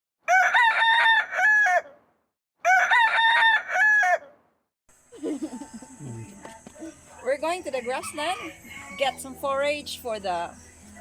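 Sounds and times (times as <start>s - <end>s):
rooster crowing: 0.2s - 2.0s, 2.6s - 4.4s, 5.2s - 9.4s.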